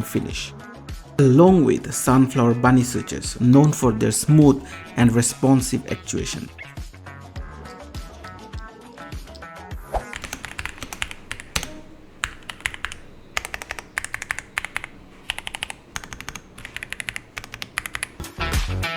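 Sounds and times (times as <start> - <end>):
mechanical keyboard typing: 1.7 - 6.4, 10.2 - 18.3.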